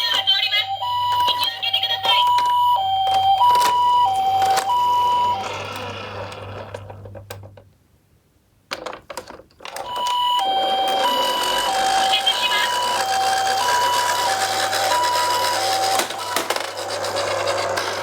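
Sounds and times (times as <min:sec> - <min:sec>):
toy two-tone siren: 0:00.0 - 0:06.1, 0:09.8 - 0:18.0.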